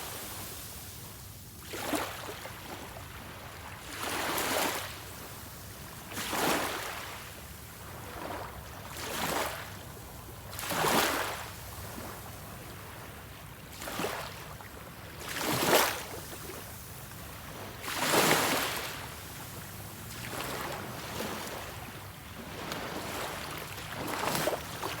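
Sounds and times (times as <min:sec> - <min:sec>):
sea waves washing in: 0:15.2 - 0:25.0.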